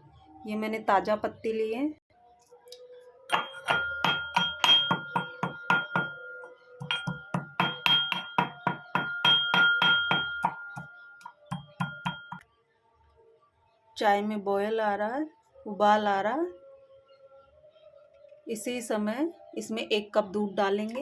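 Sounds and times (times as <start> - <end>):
metal pestle pounding in mortar: 3.3 - 10.9, 11.5 - 12.4.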